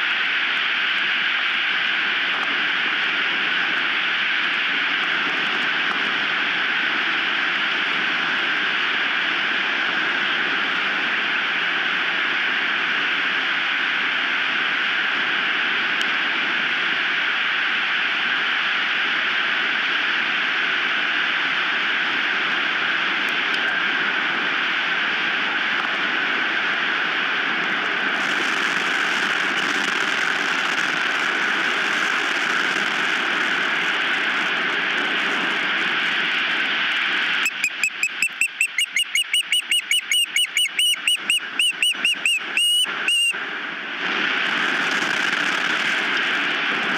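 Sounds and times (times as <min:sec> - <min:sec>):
osprey piping chirps: 0:37.4 - 0:43.3.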